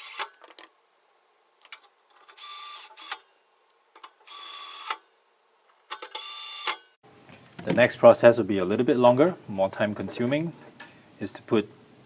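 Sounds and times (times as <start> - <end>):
electric screwdriver driving screws: 0.0 - 0.4.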